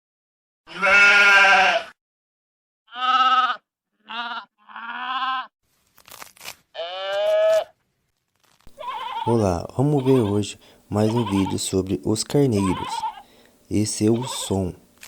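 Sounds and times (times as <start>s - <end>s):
sheep bleating: 0.7s - 2.0s, 2.9s - 5.5s, 6.7s - 7.8s, 8.8s - 11.8s, 12.4s - 13.3s, 14.0s - 14.7s
rustling: 5.7s - 9.2s.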